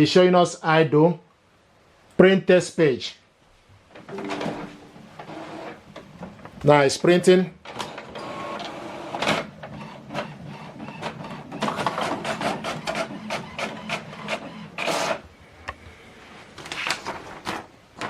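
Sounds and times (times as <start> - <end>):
inkjet printer printing: 4.1 - 6.0, 7.7 - 15.3.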